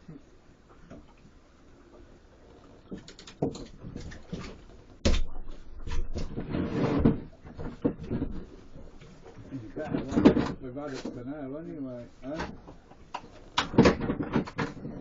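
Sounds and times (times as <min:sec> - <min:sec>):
sharp clicks on a boat: 0:02.8 - 0:06.3, 0:12.3 - 0:14.9.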